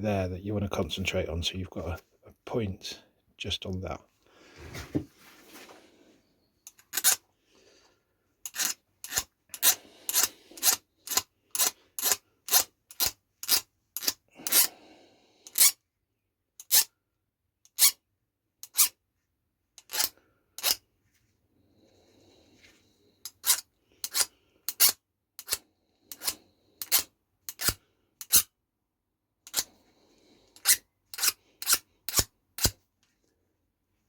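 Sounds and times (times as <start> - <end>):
file rasping on steel: 6.7 - 7.2, 8.4 - 14.7, 15.4 - 15.8, 16.6 - 16.9, 17.7 - 18.0, 18.6 - 19.0, 19.8 - 20.8, 23.2 - 28.5, 29.4 - 29.7, 30.6 - 32.8.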